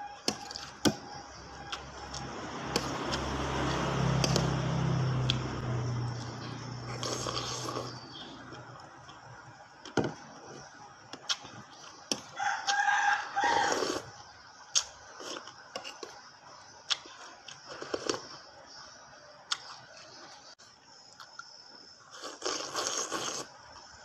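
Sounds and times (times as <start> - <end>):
rooster crowing: 12.2 - 14.1
clicks and crunches of eating: 19.5 - 19.9, 22.1 - 23.8.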